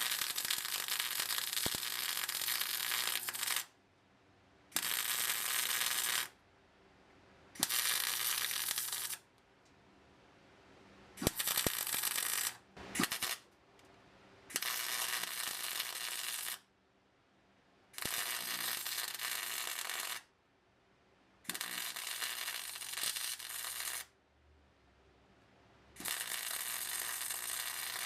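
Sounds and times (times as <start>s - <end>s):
welder crackling: 0.0s - 3.7s, 4.7s - 6.3s, 7.6s - 9.3s, 11.2s - 13.5s, 14.5s - 16.6s, 18.0s - 20.3s, 21.5s - 24.1s, 26.0s - 28.0s.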